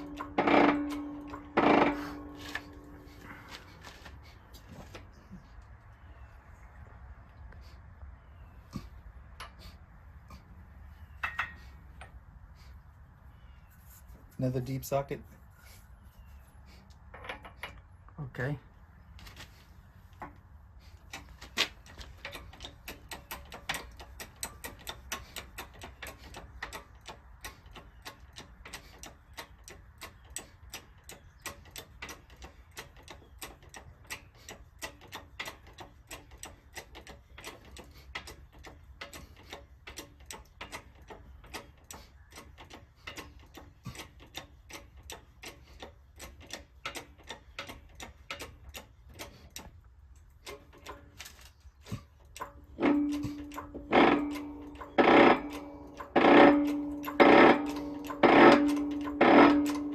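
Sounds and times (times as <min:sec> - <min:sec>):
socket ratchet clicking: 0:52.3 - 0:59.9.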